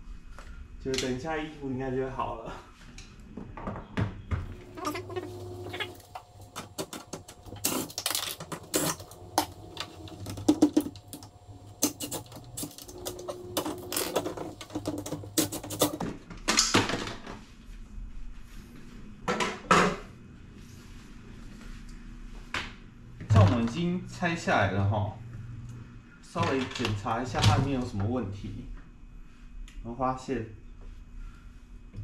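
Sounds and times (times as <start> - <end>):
steady whine: 4.4 - 15.9.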